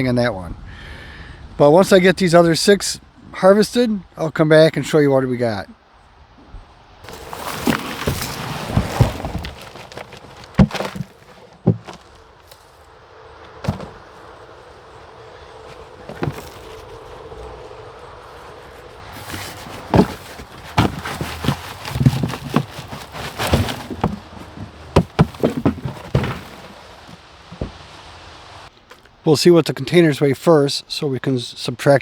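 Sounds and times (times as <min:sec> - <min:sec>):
soil rustling out of containers: 0:07.0 - 0:28.7
sharp knocks and thuds: 0:07.1 - 0:12.6, 0:13.5 - 0:14.3, 0:15.7 - 0:16.9, 0:19.0 - 0:27.9.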